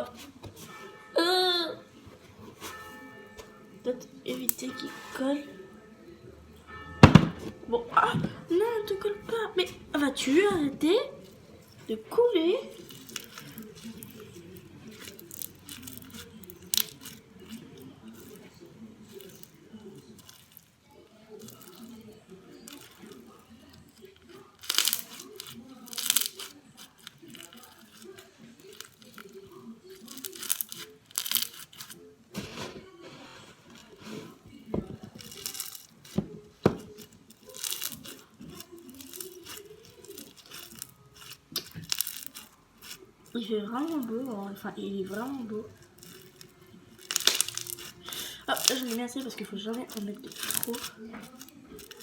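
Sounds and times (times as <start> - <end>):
slime squishing by hand: 10.1 - 52.0.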